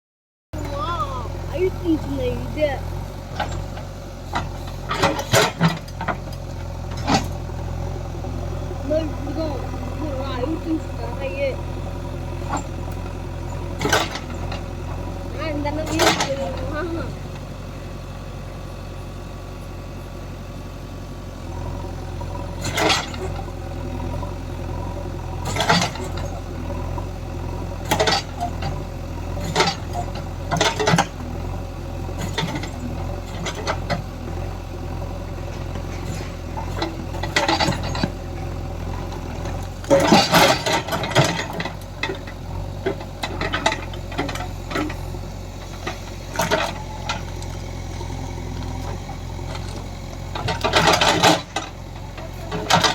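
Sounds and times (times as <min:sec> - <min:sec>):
diesel engine running: 0:00.6 - 0:52.9
metal clanks and rattles: 0:25.4 - 0:26.4, 0:27.8 - 0:31.2, 0:35.5 - 0:38.2, 0:39.3 - 0:47.7, 0:48.8 - 0:52.9.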